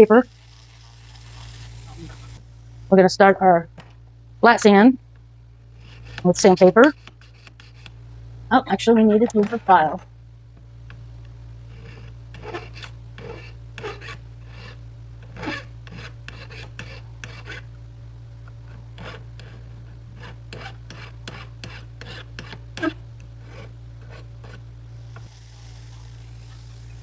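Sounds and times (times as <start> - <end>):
steady low hum: 0.0 - 27.0
sanding stick scraping metal ring: 5.7 - 8.0, 11.7 - 17.7, 18.7 - 27.0.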